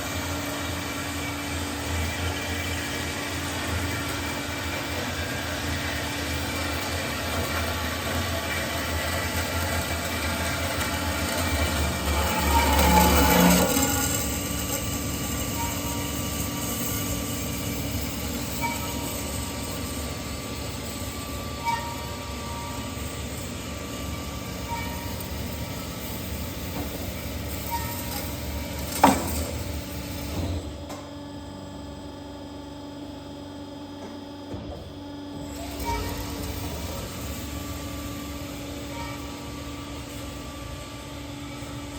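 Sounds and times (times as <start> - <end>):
band saw humming: 0.0 - 30.5.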